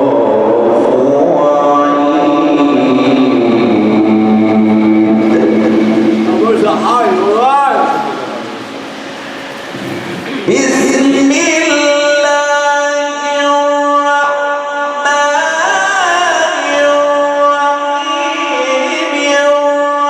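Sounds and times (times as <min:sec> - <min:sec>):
man chanting melodically: 0:00.0 - 0:14.5.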